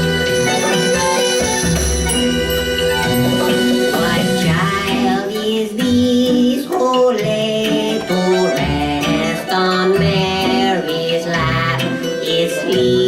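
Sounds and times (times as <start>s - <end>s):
instrumental backing: 0.0s - 13.0s
person singing: 2.8s - 13.0s.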